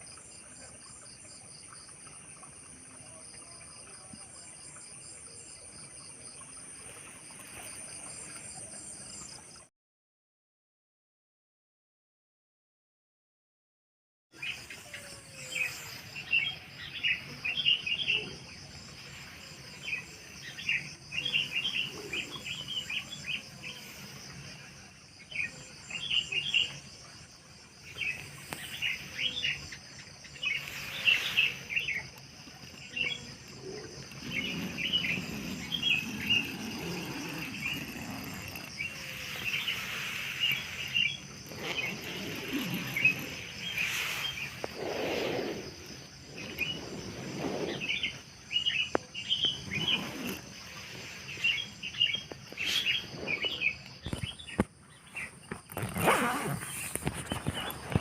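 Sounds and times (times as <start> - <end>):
high-pitched insect trill: 14.4 - 58.0
small birds chirping: 14.4 - 58.0.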